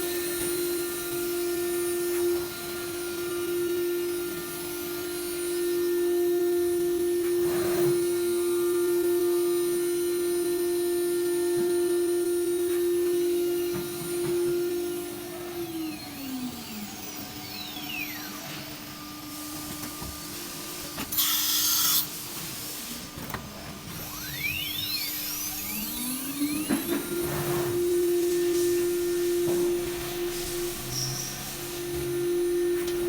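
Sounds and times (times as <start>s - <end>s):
router spindle whining: 0.0s - 22.2s, 23.5s - 33.0s
compressed air hiss: 21.1s - 23.1s, 27.3s - 32.6s.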